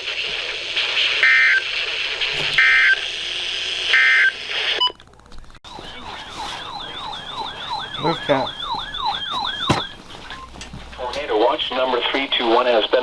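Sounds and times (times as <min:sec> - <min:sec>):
radio hiss: 0:00.0 - 0:04.8, 0:05.7 - 0:08.8, 0:10.2 - 0:13.0
warbling siren-like tone: 0:05.7 - 0:10.6.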